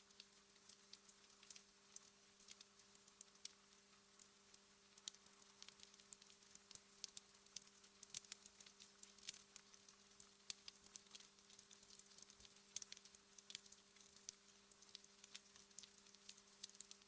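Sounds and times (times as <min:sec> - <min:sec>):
faint hiss: 0:00.0 - 0:05.7
wood fire crackling: 0:00.1 - 0:17.0.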